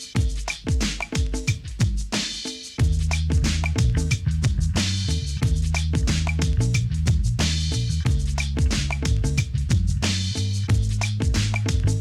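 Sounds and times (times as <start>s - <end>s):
steady drum beat: 0.0s - 12.0s
bass line: 2.8s - 12.0s.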